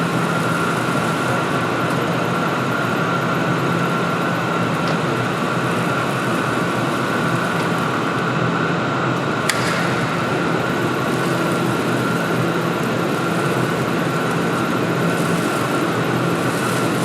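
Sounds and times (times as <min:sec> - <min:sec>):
sharp click: 0:09.4 - 0:11.4.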